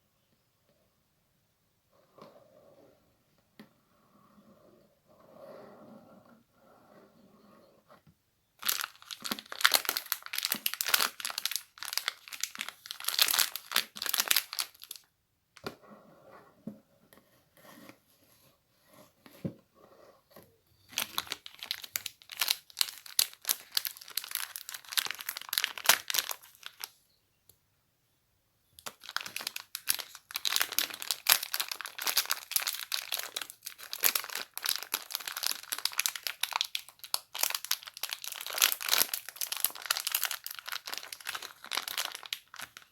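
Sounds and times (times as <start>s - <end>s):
crumpled material crinkling: 8.6s - 15.0s, 20.9s - 27.0s, 28.8s - 42.9s.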